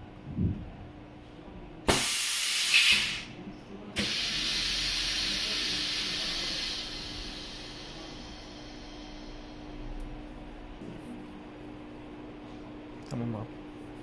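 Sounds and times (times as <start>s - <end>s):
crimping machine hissing: 1.9s - 3.4s, 4.0s - 10.0s.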